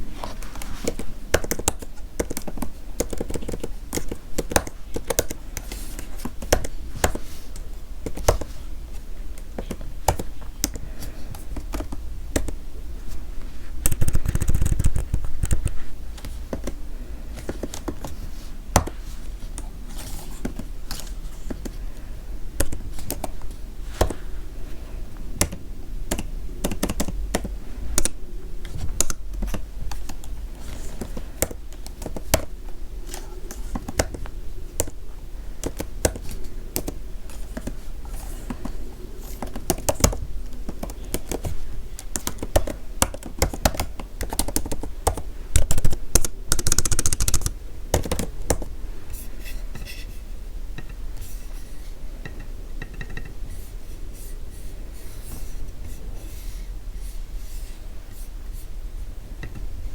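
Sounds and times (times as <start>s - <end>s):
keyboard keystroke clicks: 42.2s - 48.6s.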